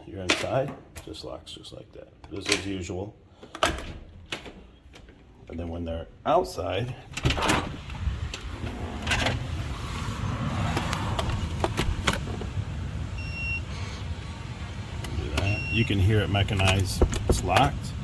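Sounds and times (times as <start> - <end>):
low rumble of handling noise: 16.0 - 18.0
lock clicks and knocks: 16.5 - 17.7.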